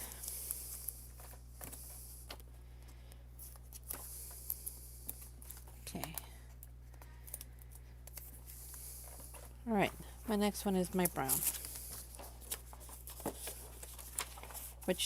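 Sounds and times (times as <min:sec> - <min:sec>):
low hum and hiss: 0:00.0 - 0:15.0.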